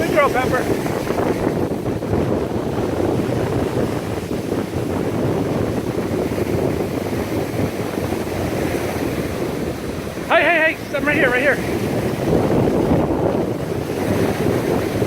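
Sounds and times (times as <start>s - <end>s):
surf rushing: 0.0s - 15.0s
wind buffeting microphone: 0.0s - 15.0s.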